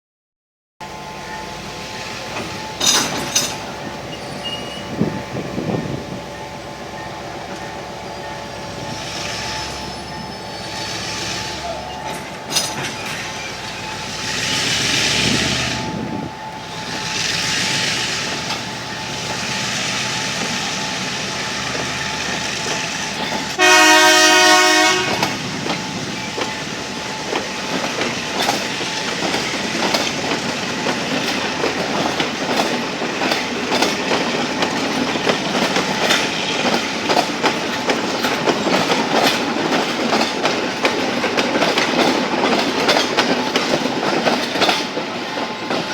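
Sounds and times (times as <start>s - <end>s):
diesel locomotives running: 0.8s - 45.9s
wheels clattering over rail joints: 2.2s - 5.7s, 10.9s - 16.1s, 16.7s - 23.6s, 25.0s - 45.9s
multi-tone train horn: 23.6s - 25.5s.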